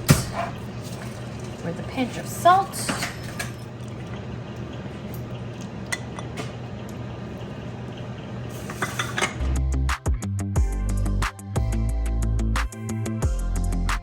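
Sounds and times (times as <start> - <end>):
kitchenware clinking: 0.0 - 3.8, 8.7 - 9.5.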